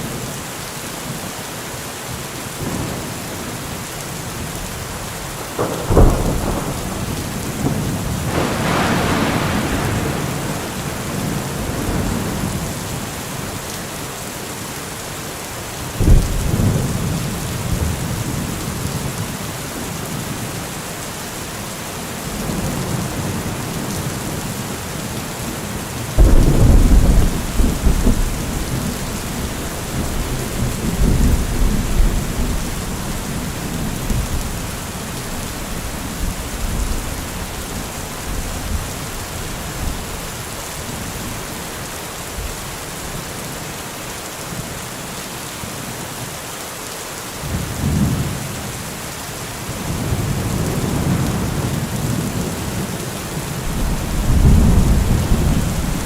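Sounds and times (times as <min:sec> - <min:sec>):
heavy rain: 0:00.0 - 0:56.0
rolling thunder: 0:04.8 - 0:13.0, 0:26.2 - 0:40.1, 0:49.8 - 0:56.0
loud thunderclap: 0:05.4 - 0:12.8, 0:26.2 - 0:34.7, 0:53.6 - 0:56.0.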